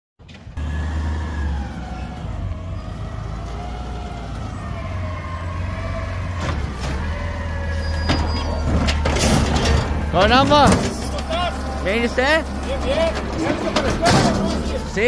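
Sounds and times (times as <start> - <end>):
diesel engine rumbling: 0.2 - 15.0.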